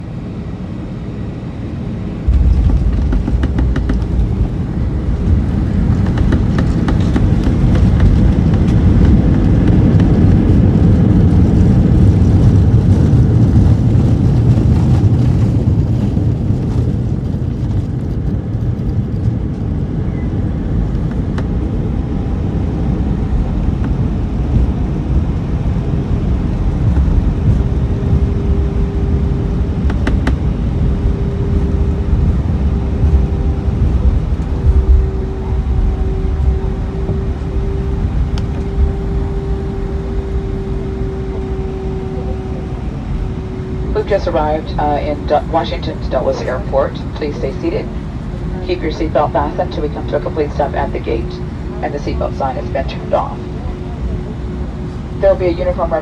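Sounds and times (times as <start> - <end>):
airliner rumble on landing: 0.0 - 56.0
jet engine tone: 19.6 - 56.0.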